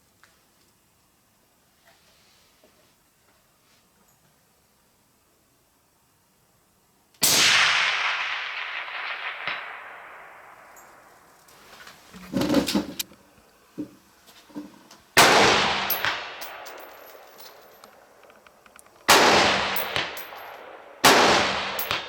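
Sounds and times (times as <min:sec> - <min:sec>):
rifle shots echoing: 0:07.2 - 0:11.3, 0:15.2 - 0:18.2, 0:19.0 - 0:22.0
handling clatter: 0:11.5 - 0:13.2, 0:15.7 - 0:20.6.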